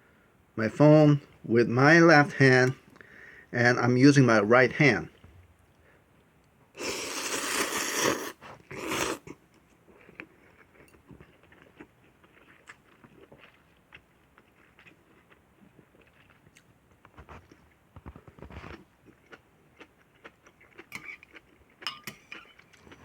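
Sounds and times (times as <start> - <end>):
person slurping noodles: 6.8 - 9.3
quiet wet chewing: 8.2 - 23.0.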